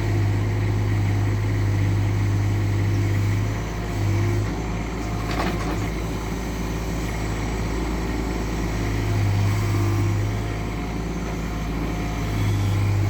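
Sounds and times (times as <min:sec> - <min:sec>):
excavator diesel engine running: 0:00.0 - 0:13.0
short clatter: 0:05.1 - 0:05.9.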